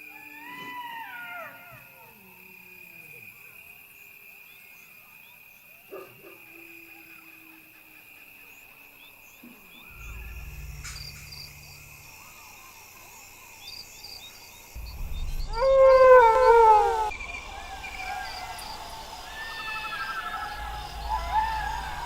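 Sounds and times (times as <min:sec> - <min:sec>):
jackal howling: 0:00.0 - 0:02.3, 0:14.9 - 0:22.0
insects droning: 0:00.0 - 0:22.0.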